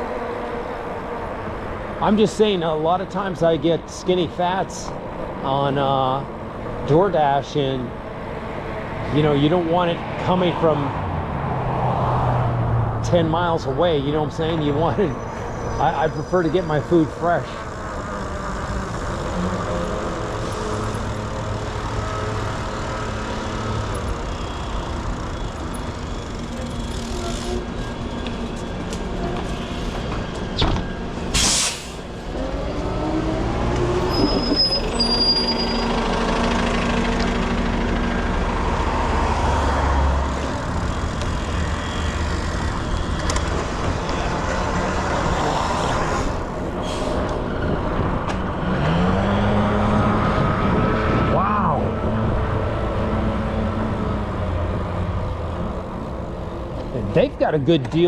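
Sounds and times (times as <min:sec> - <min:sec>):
passing vehicle engines: 0:00.0 - 0:58.0
short loud hiss: 0:31.3 - 0:32.0.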